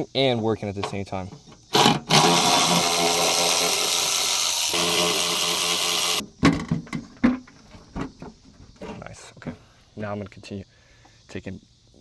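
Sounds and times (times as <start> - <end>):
power drill running: 1.7 - 6.2.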